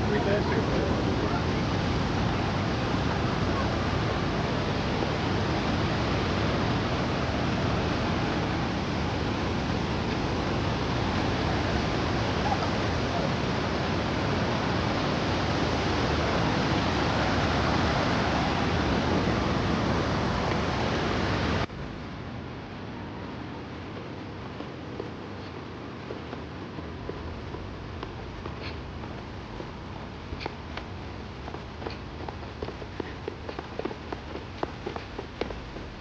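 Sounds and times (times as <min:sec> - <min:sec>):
waterfall rushing: 0:00.0 - 0:21.7.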